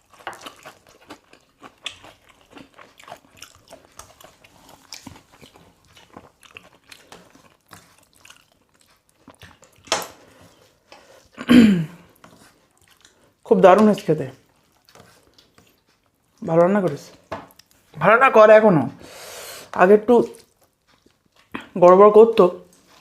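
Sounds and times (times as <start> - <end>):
chewing and biting food: 0.0 - 11.4, 12.0 - 18.0, 20.1 - 23.0
loud breath: 19.0 - 19.7.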